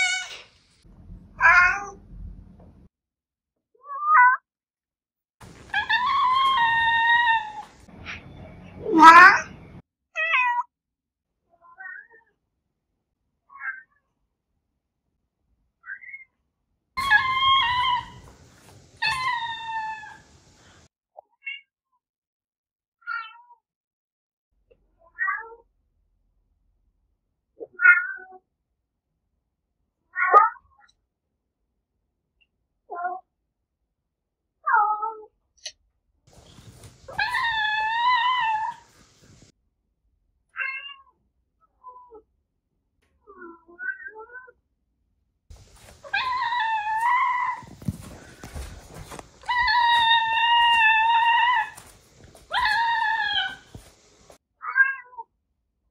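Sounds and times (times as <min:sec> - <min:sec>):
cats meowing: 0:01.4 - 0:02.0, 0:05.4 - 0:09.6, 0:17.0 - 0:20.6, 0:36.3 - 0:39.0, 0:45.5 - 0:53.9.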